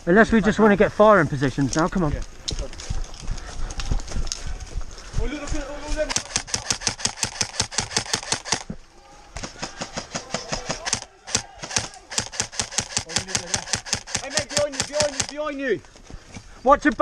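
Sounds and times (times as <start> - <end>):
airsoft rifle automatic fire: 6.0 - 8.6, 9.5 - 15.4.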